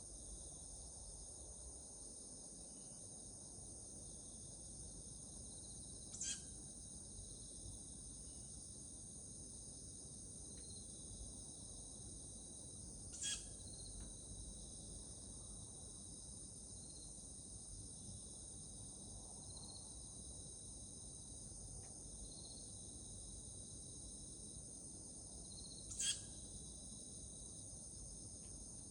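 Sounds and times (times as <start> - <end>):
night insects chirping: 0.0 - 28.9
night animal sharp calls: 6.1 - 6.5, 13.1 - 13.6, 25.9 - 26.4.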